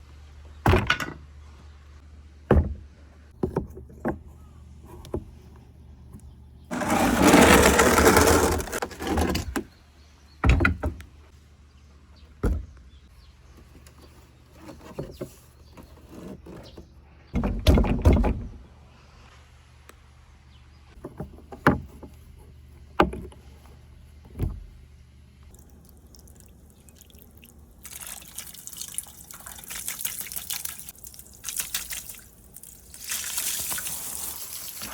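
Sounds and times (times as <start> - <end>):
water running: 25.5 - 34.9.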